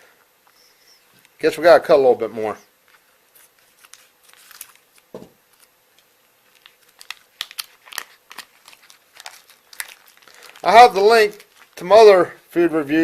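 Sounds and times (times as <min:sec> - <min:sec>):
plastic packaging crinkling: 0:02.8 - 0:12.1
soft knock: 0:05.2 - 0:05.4.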